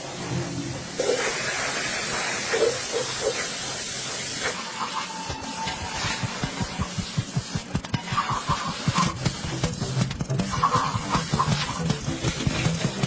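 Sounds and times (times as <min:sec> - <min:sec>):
water spraying: 0:00.0 - 0:13.0
low thudding beat: 0:06.2 - 0:13.0.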